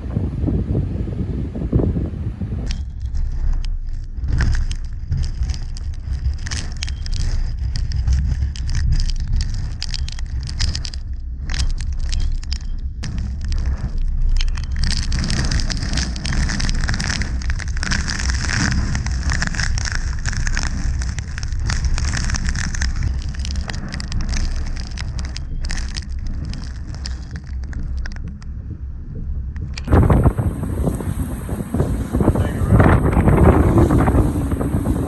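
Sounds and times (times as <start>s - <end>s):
wind buffeting microphone: 0.0s - 11.5s, 27.7s - 35.0s
rain spattering: 29.9s - 35.0s.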